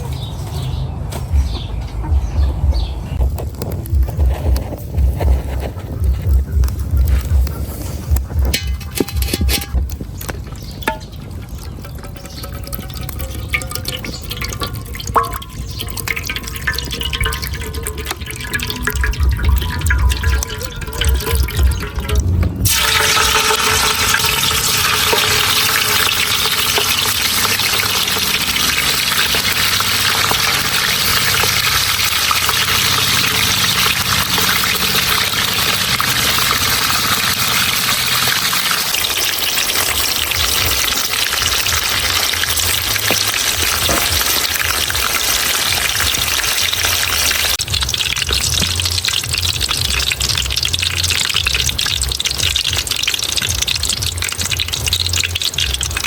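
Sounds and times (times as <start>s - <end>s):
oil sizzling in a pan: 7.8s - 56.0s
low rumble: 16.4s - 27.4s.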